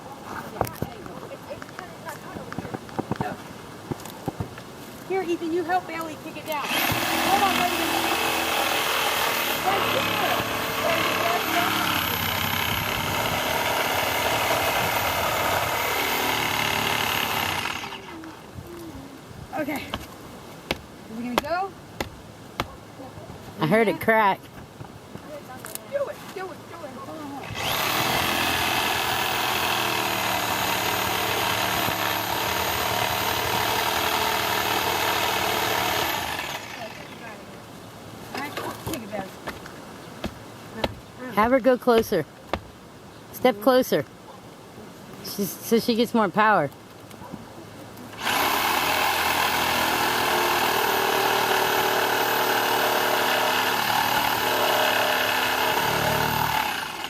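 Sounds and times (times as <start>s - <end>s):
power saw running: 6.6s - 18.1s, 27.4s - 36.9s, 48.2s - 57.0s.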